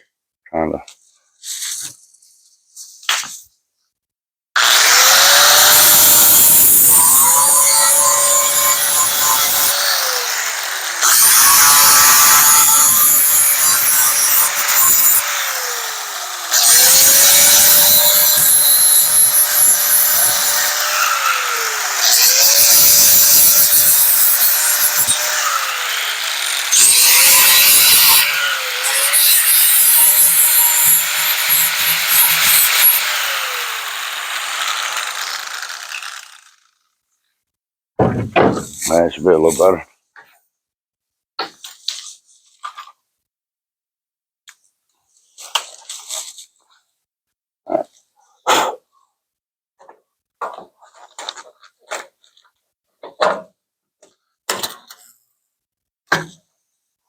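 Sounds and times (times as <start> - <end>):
electric grinder grinding sheet metal: 4.6 - 36.6.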